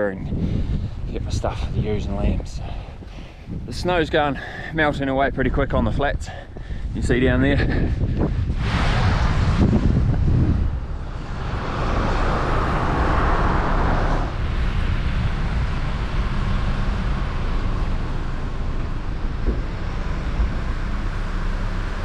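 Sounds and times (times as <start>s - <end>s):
vehicle engine and road rumble: 0.0s - 22.0s
loud rushing noise: 8.1s - 22.0s.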